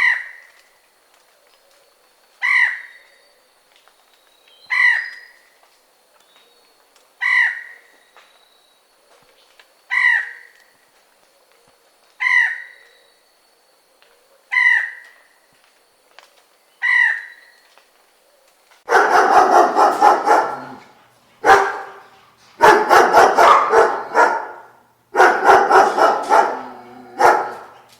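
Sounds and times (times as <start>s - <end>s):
harsh bird calls: 16.6s - 17.7s, 18.9s - 27.9s
dog barking loudly: 18.9s - 27.9s.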